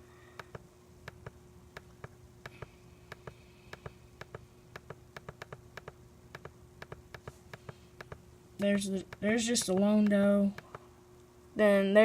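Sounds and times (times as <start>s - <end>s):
low electrical hum: 0.0s - 12.0s
computer mouse clicks: 0.4s - 8.2s.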